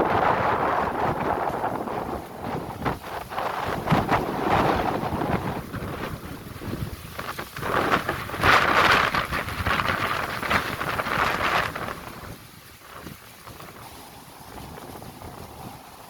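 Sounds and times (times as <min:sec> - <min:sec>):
strong wind buffeting microphone: 0:00.0 - 0:16.0.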